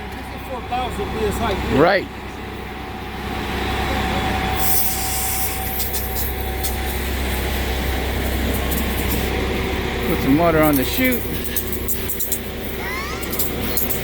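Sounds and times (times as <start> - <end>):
diesel truck engine rumbling: 0.0 - 14.0
brief hiss: 4.6 - 6.3.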